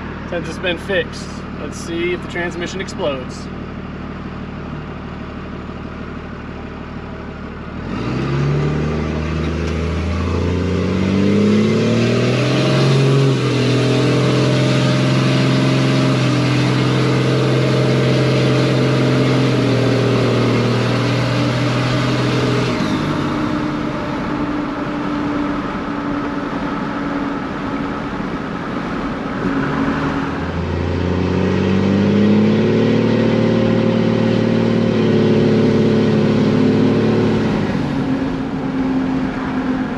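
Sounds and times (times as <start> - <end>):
diesel truck engine accelerating: 0.0 - 39.9.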